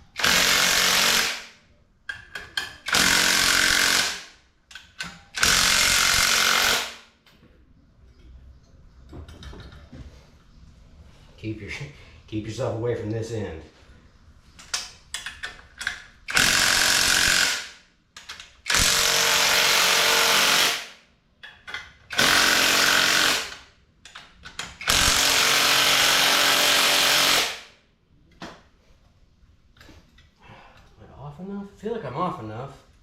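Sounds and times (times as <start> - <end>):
impact wrench running: 0.2 - 1.5, 2.8 - 4.3, 5.3 - 7.0, 16.3 - 17.8, 18.6 - 20.9, 22.1 - 23.6, 24.8 - 27.7.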